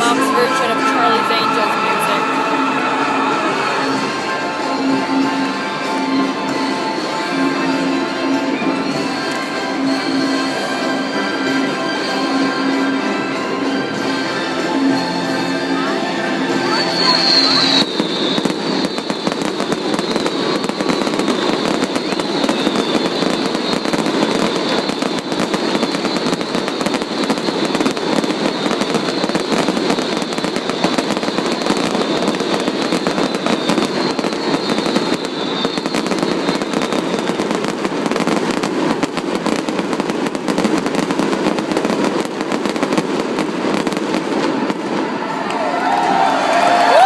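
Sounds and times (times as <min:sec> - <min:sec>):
fireworks bangs and crackling: 0:00.0 - 0:47.0
high thin whistle: 0:16.6 - 0:37.4.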